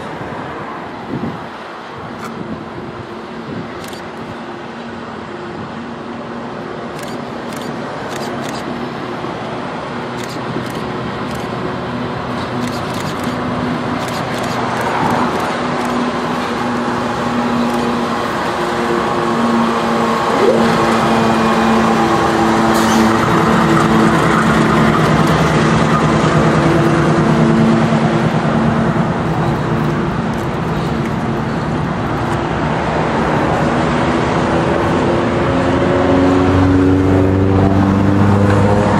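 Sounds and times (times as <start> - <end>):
locomotive engines droning: 0.0 - 38.9.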